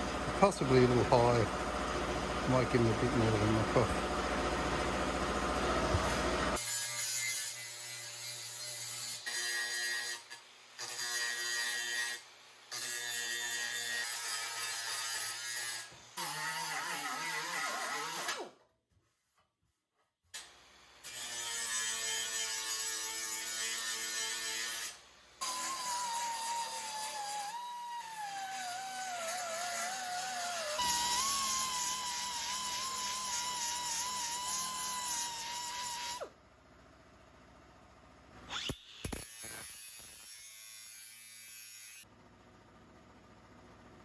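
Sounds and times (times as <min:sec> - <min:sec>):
angle grinder motor whine: 0:25.4 - 0:36.3, 0:38.4 - 0:40.5.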